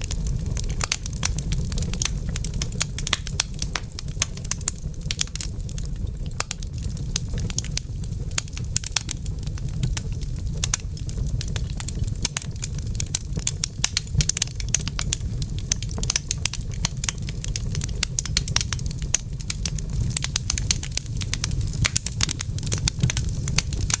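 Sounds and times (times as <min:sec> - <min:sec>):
steady low rumble: 0:00.0 - 0:15.7
fire crackling and popping: 0:00.0 - 0:24.0.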